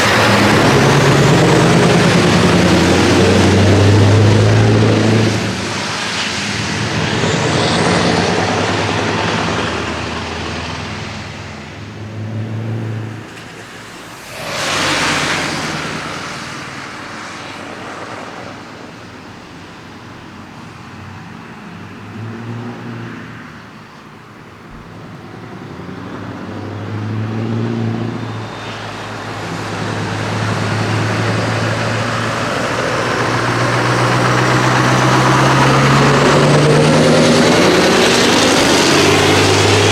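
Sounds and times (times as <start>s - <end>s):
loud rushing pass-by: 0.0s - 20.0s, 24.8s - 39.9s
truck engines pulling: 0.0s - 39.9s.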